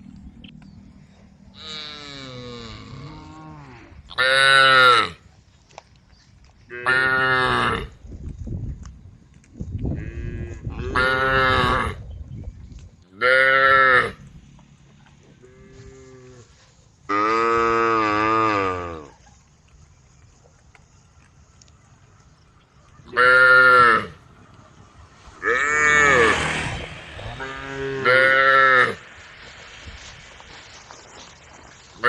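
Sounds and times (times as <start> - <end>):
cows mooing: 1.5 - 5.2, 13.2 - 14.2, 15.3 - 19.2, 23.1 - 24.3, 25.3 - 29.0.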